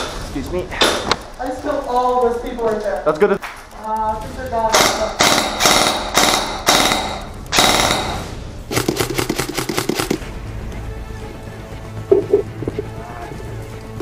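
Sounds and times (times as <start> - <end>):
airsoft guns firing full-auto: 4.7 - 10.2.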